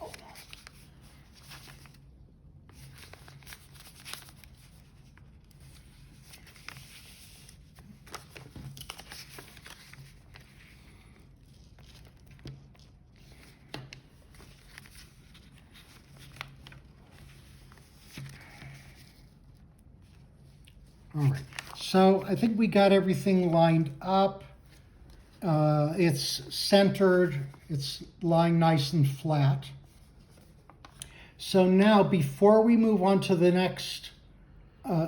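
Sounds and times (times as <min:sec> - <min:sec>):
paper rustling and crinkling: 0:00.0 - 0:22.8, 0:29.8 - 0:31.0.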